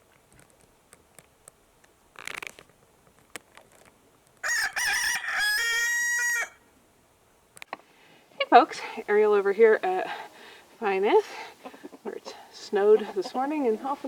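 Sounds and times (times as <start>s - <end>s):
rooster crowing: 4.4s - 6.7s.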